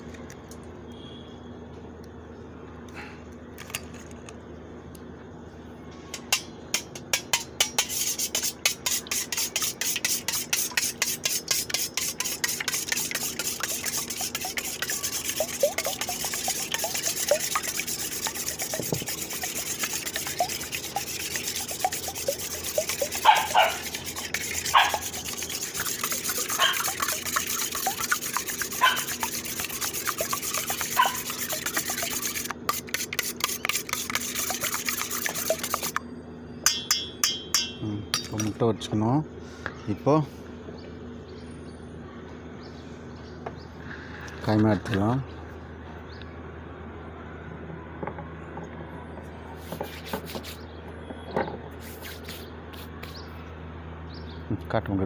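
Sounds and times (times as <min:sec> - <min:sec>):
utensil scraping in a bowl: 0:06.2 - 0:36.0, 0:49.6 - 0:50.6, 0:51.8 - 0:53.3.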